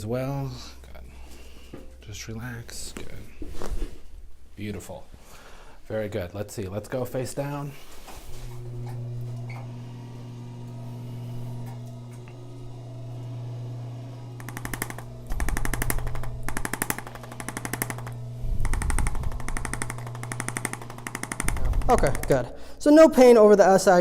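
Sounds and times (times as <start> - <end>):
motor hum: 8.3 - 22.8
rapid machine tapping: 11.4 - 22.6.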